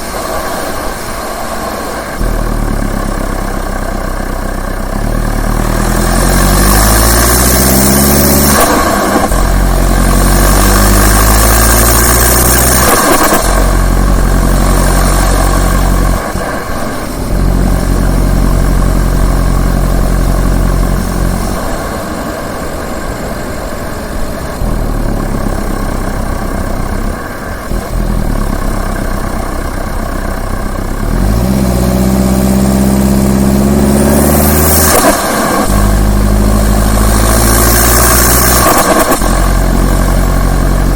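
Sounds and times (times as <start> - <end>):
diesel engine revving: 0.0 - 40.9.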